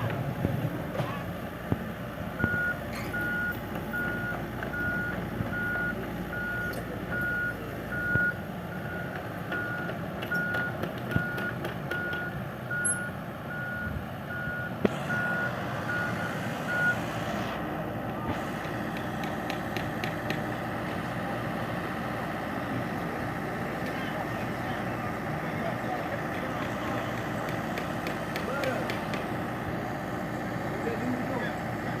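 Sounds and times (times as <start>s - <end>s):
low rumble of machine engine: 0.0s - 32.0s
back-up alarm beeping: 2.4s - 17.0s.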